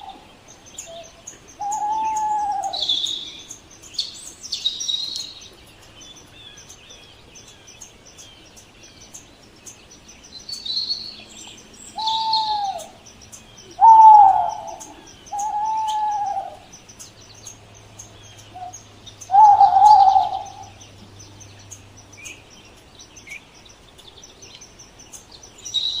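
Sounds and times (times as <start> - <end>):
owl hooting: 0.0 - 3.5, 11.9 - 13.0, 13.7 - 16.7, 18.5 - 20.8
faint high chirps and ticks: 0.0 - 26.0.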